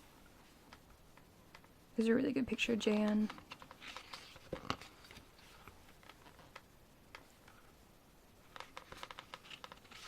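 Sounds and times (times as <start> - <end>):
pages turning: 3.2 - 6.6, 8.5 - 10.0.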